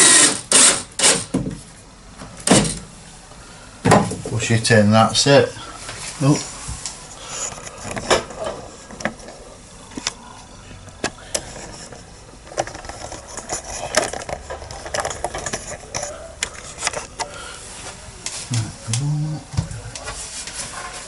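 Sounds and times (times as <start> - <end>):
clicks of plastic parts handled: 10.9 - 17.4.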